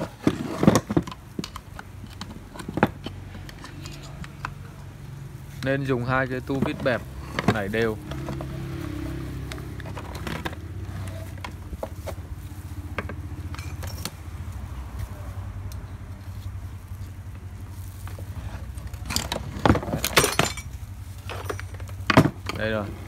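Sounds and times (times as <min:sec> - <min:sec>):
screwdriver metal scrapes: 0:00.0 - 0:04.7.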